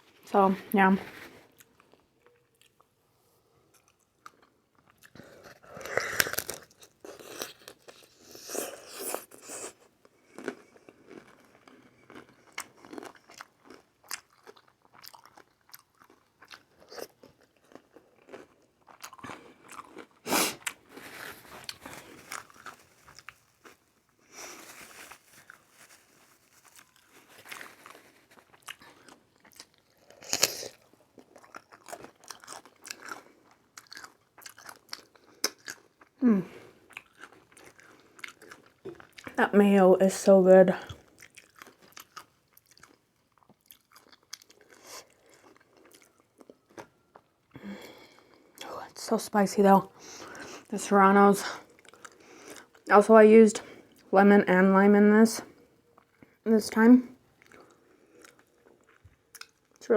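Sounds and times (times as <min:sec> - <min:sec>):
person chewing crunchy food: 0:03.6 - 0:39.4, 0:40.8 - 0:48.7, 0:51.4 - 0:52.9, 0:57.3 - 0:59.8.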